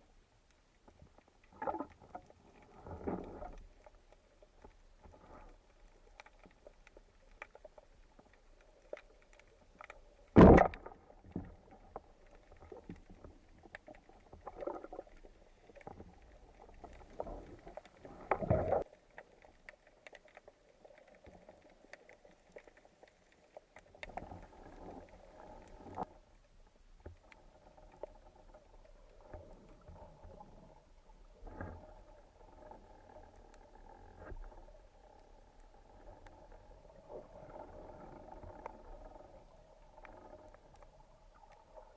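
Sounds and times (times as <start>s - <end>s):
underwater swishes: 0.0s - 41.9s
water sloshing and bubbling: 0.0s - 41.9s
small clicks: 0.4s - 26.2s.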